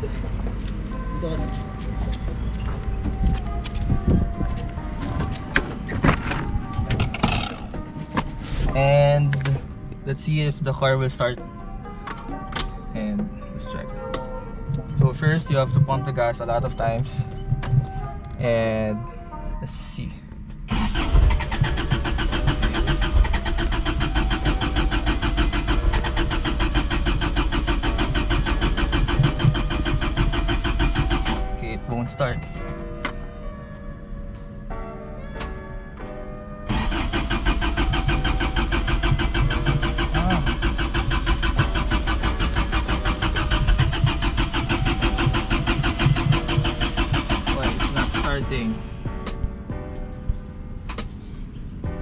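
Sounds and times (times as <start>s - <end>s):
starter motor cranking engine: 20.7s - 31.6s, 36.7s - 48.6s.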